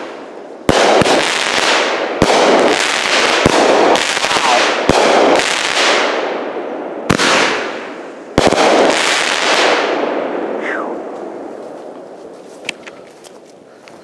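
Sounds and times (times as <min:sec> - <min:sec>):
firework crackling: 0:00.0 - 0:06.4
firework bangs: 0:00.0 - 0:10.6.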